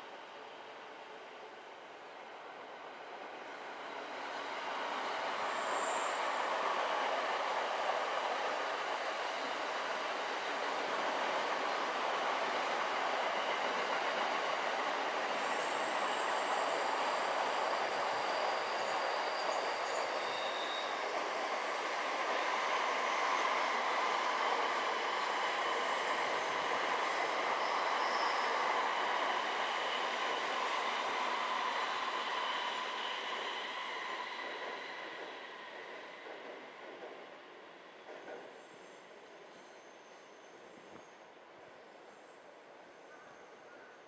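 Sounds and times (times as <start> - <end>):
train rolling past: 3.2 - 41.1
wheel squeal: 17.8 - 21.0.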